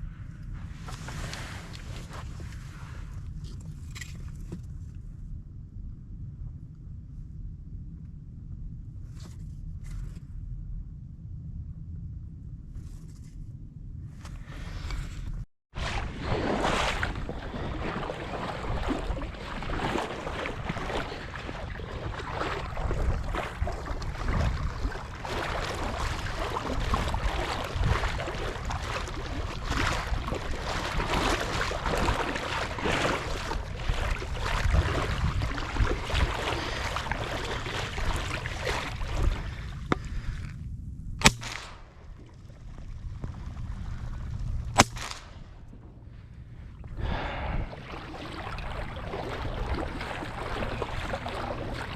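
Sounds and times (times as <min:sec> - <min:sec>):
dense rustling noise: 0:00.5 - 0:04.9
shotgun shots: 0:41.2 - 0:41.9, 0:44.8 - 0:45.4.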